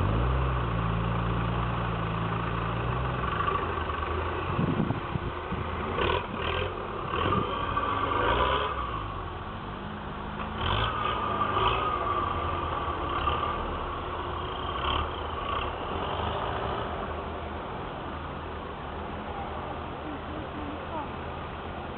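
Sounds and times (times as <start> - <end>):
off-road vehicle engine revving: 0.0 - 9.4, 10.4 - 17.3.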